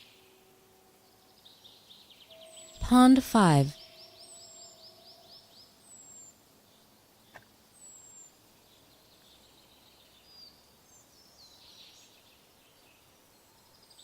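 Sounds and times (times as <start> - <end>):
songbird trill: 0.0 - 14.0
bird chirps: 1.2 - 6.4.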